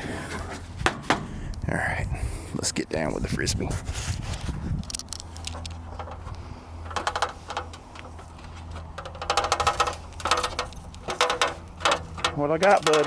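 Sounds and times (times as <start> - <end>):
low steady hum: 0.0 - 13.0
rapid ratchet-like clicking: 4.9 - 13.0
metallic rattling of ladder: 5.3 - 13.0.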